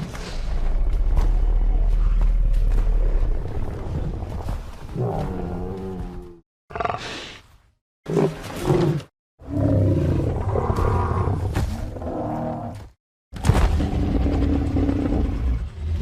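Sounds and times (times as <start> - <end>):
deep animal roars: 8.1 - 12.8, 13.7 - 16.0.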